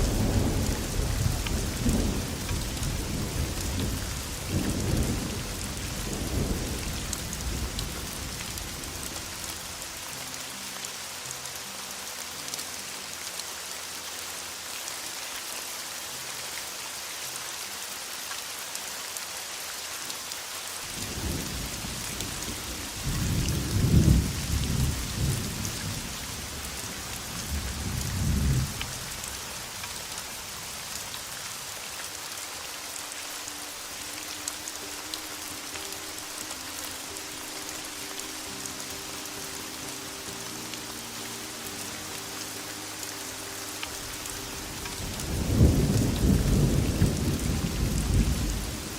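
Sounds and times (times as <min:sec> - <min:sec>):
thunder rumbling: 0:00.0 - 0:08.7, 0:21.2 - 0:26.1, 0:44.9 - 0:48.9
heavy rain hissing: 0:00.0 - 0:48.9.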